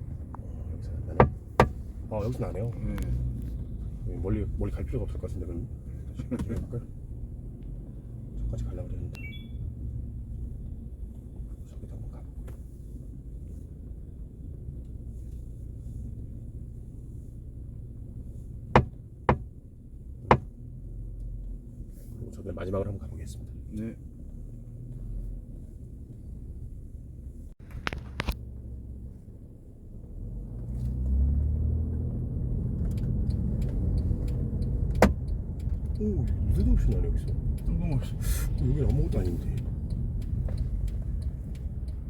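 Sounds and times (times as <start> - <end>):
road rumble in a car cabin: 0.0 - 42.0
sunroof knocking: 1.1 - 1.8, 18.8 - 19.5.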